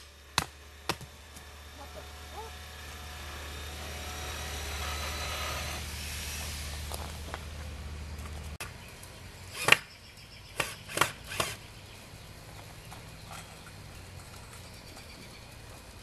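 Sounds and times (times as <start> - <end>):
hammer driving wooden stake: 0.0 - 5.8, 9.5 - 9.9, 10.6 - 11.6.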